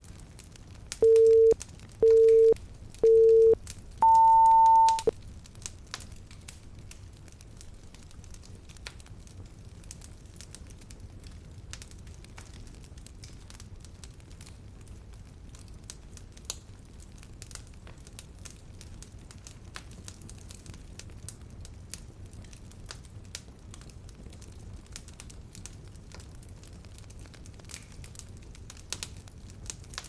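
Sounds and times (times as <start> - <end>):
fireplace crackling and popping: 0.0 - 4.0, 5.0 - 30.0
timer countdown beeps: 1.0 - 5.1.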